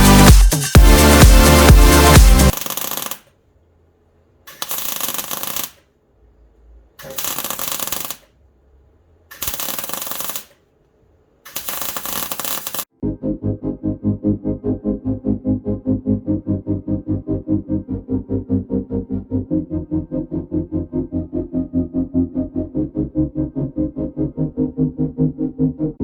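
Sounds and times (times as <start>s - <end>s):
pulsing synth music: 0.0s - 2.6s
harsh rattling noise: 1.9s - 3.2s, 4.5s - 5.8s, 7.0s - 8.3s, 9.3s - 10.6s, 11.4s - 12.9s.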